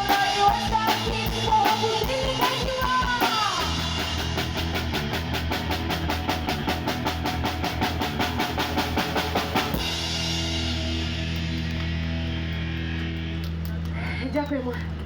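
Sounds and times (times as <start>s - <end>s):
fast drum hits: 0.0s - 10.9s
live rock band playing: 0.0s - 13.9s.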